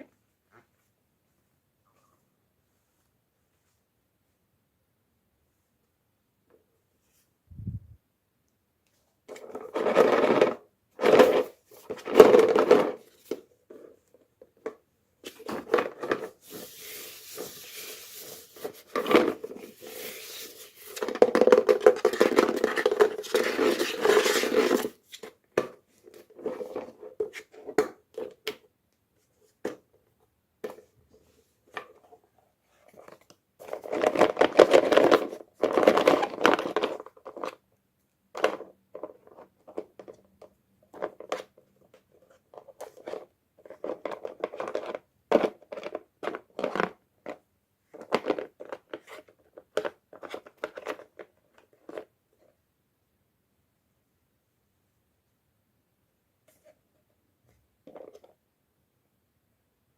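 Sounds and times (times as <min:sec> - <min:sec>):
toy packaging rustling and tearing: 0:09.3 - 0:13.4, 0:15.3 - 0:25.4, 0:32.8 - 0:37.6, 0:40.9 - 0:52.1.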